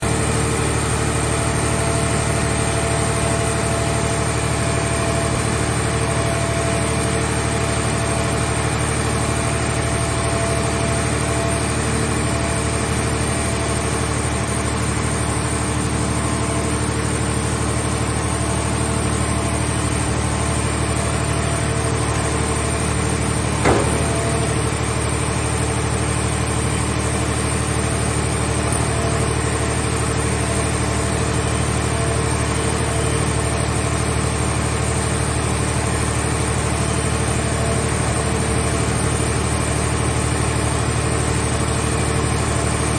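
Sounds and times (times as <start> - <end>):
hydraulic machine humming with whine: 0.0 - 42.9
sharp metal clank: 23.6 - 24.7.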